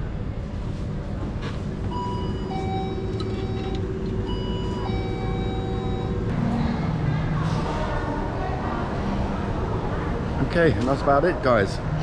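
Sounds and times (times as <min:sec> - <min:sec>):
steady hum: 0:00.0 - 0:12.0
two-note door entry chime: 0:01.9 - 0:06.3
background hubbub: 0:04.2 - 0:12.0.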